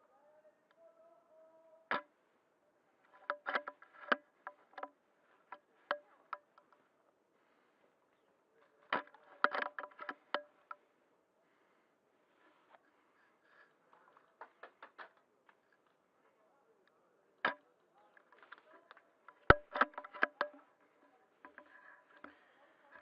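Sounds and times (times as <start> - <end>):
sharp clicks and knocks: 3.1 - 6.8, 8.8 - 10.8, 14.4 - 15.6, 18.2 - 20.6.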